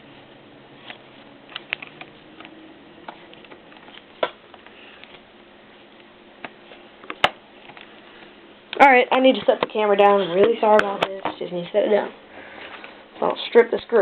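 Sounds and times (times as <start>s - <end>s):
screwdriver clicking on laptop parts: 1.5s - 2.5s.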